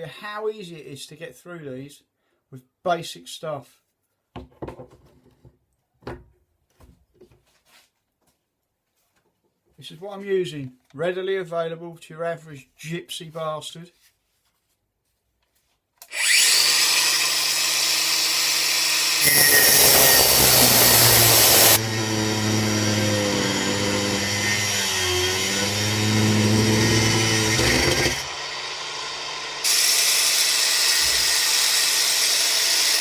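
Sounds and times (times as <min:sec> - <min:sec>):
angle grinder cutting metal: 0:16.1 - 0:33.0.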